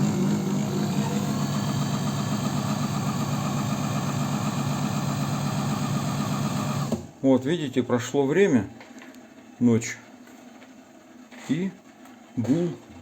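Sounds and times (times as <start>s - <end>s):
sewing machine humming: 0.0s - 7.2s.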